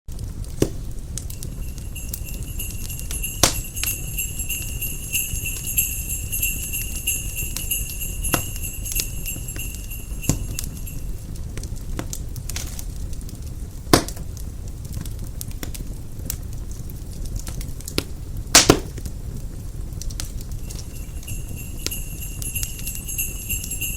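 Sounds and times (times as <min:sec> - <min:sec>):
fireplace fire crackling: 0:00.1 - 0:23.9
sleigh bells jingling: 0:01.2 - 0:11.4, 0:20.5 - 0:23.9.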